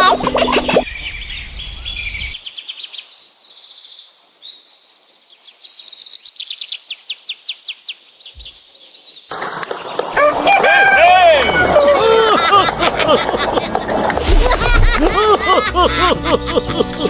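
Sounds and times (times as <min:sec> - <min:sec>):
bird chirping: 0:00.0 - 0:11.6
bird whistling: 0:06.0 - 0:11.8.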